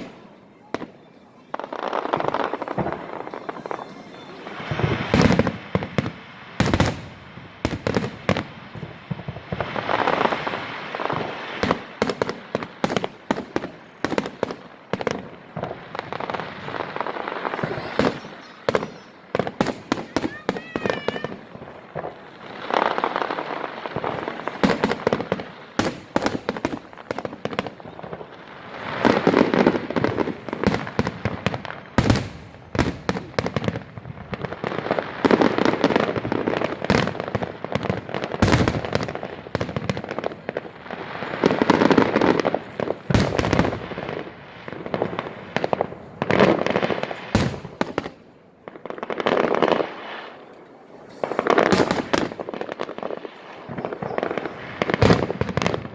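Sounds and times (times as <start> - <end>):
firework shells bursting: 0.0 - 28.2
firework crackling: 0.0 - 55.9.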